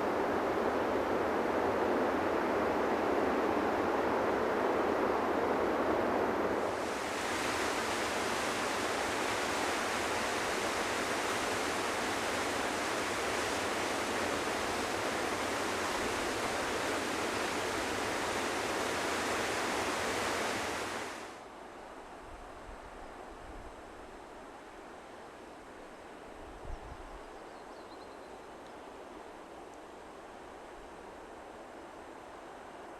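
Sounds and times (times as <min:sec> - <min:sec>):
river rapids rushing: 0:02.1 - 0:21.4.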